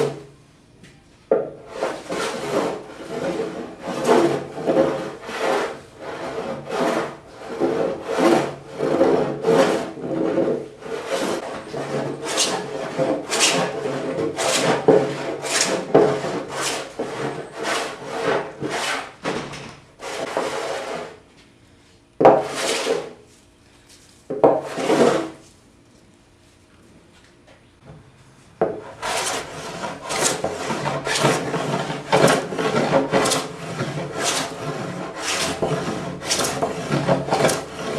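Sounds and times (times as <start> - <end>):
hand plane shaving wood: 1.7 - 19.2, 20.0 - 21.2, 22.4 - 23.2, 24.6 - 25.4, 28.8 - 37.9.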